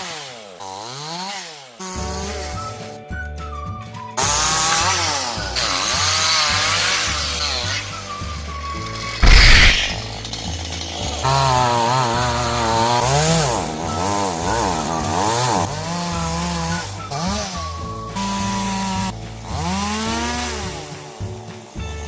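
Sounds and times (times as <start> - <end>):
chainsaw cutting wood: 0.0 - 1.9, 9.2 - 17.6, 18.2 - 21.1
background music: 2.1 - 10.1, 12.8 - 22.0.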